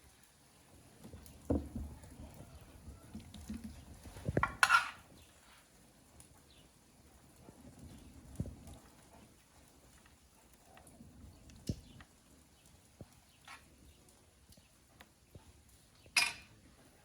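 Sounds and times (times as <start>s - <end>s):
dull knocks of cookware: 1.4s - 2.4s, 16.2s - 16.5s
cookware scrape or clatter: 4.4s - 5.0s, 16.2s - 16.5s.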